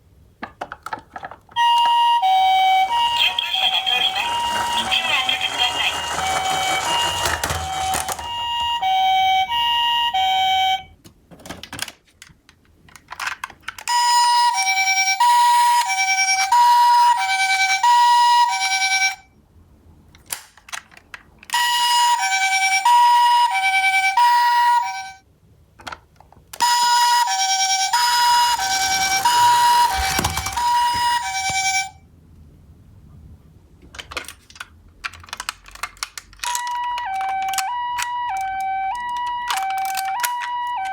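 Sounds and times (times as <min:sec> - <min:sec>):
ambulance two-tone siren: 0:01.6 - 0:11.0, 0:13.9 - 0:19.2, 0:21.6 - 0:25.2, 0:26.6 - 0:32.0, 0:36.4 - 0:40.9.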